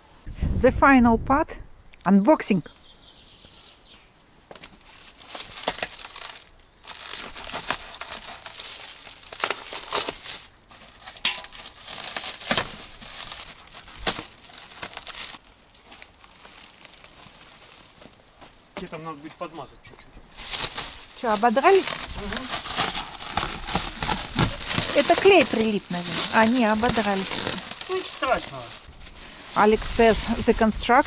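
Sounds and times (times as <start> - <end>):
packaging tearing and crinkling: 4.8 - 18.2, 20.3 - 30.4.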